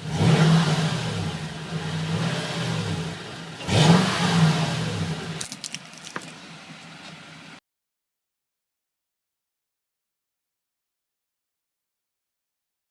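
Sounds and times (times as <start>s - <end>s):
car engine revving: 0.0s - 5.5s.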